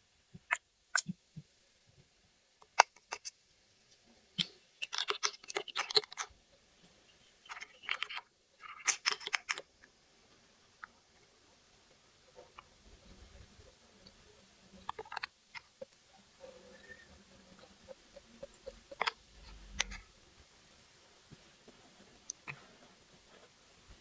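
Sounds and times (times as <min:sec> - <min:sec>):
plastic toy pieces clicking: 0:04.4 - 0:06.3, 0:07.5 - 0:09.6
plastic toy pieces clattering: 0:04.8 - 0:06.3, 0:07.5 - 0:09.6.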